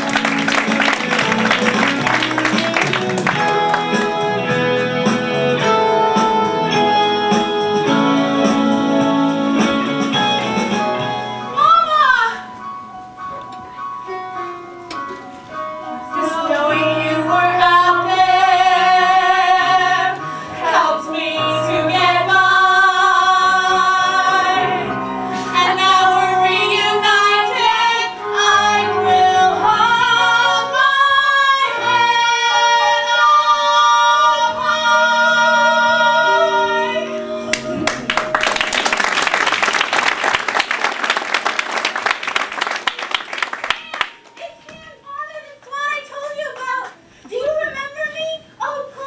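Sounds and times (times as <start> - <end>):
audience applause: 0.0 - 4.2, 37.5 - 44.4
person singing with vibrato: 16.1 - 38.8
sustained instrumental chords: 34.4 - 40.1.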